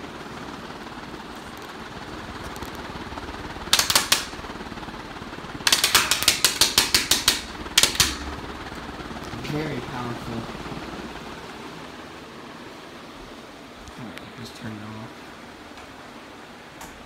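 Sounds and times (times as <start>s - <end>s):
paper rattling in fan: 0.0s - 12.6s
ceiling fan air rush: 0.0s - 17.0s.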